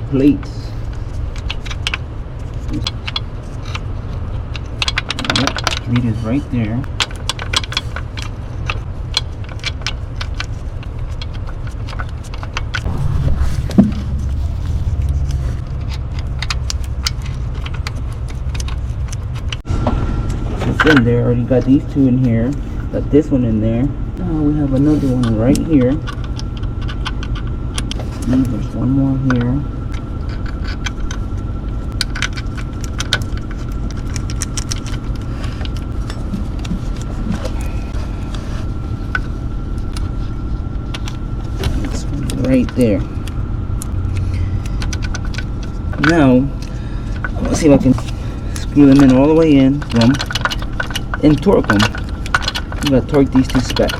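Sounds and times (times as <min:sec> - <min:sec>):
steady low rumble: 0:00.0 - 0:53.9
metal clicks of tools and bolts: 0:04.5 - 0:06.0, 0:43.8 - 0:53.9.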